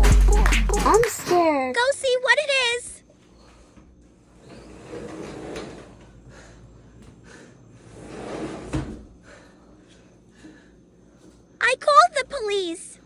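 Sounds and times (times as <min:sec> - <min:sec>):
household handling rustling and scraping: 0:03.2 - 0:06.2, 0:07.0 - 0:09.2.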